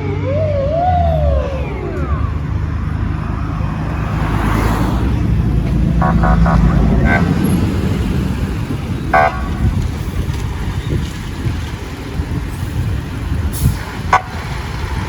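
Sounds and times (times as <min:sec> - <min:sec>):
police siren swoop: 0:00.0 - 0:05.2
traffic: 0:00.0 - 0:15.0
vehicle engine: 0:00.0 - 0:15.0.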